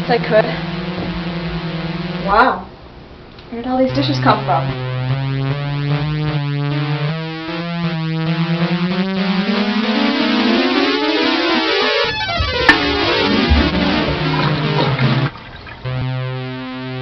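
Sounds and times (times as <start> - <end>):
synthesizer music: 0.0 - 2.4, 4.2 - 17.0.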